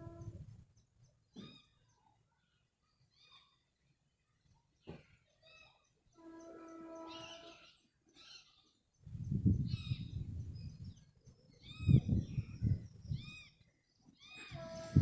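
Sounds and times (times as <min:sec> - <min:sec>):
wind gusting against microphone: 0:00.0 - 0:00.6, 0:09.0 - 0:13.4, 0:14.5 - 0:15.0.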